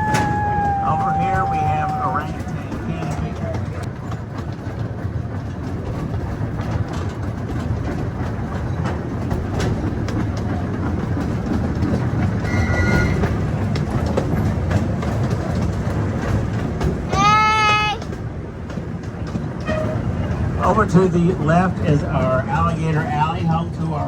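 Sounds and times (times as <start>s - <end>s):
high squeal: 0.0s - 2.6s, 12.4s - 13.4s
rail clicks: 0.0s - 24.0s
train rumble: 0.0s - 24.0s.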